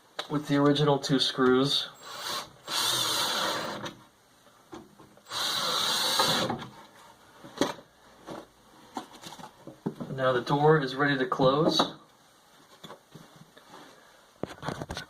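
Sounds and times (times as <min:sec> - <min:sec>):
power driver driving screws: 0:05.2 - 0:06.6.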